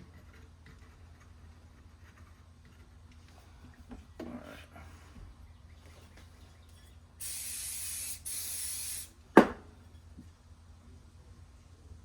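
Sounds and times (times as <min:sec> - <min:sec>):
aerosol can spraying: 0:07.2 - 0:09.1.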